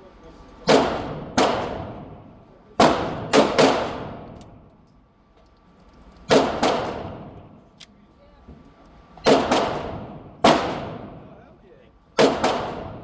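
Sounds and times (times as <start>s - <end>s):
gunshots with echo: 0.7s - 2.2s, 2.8s - 4.3s, 6.3s - 7.5s, 9.3s - 11.3s, 12.2s - 13.0s.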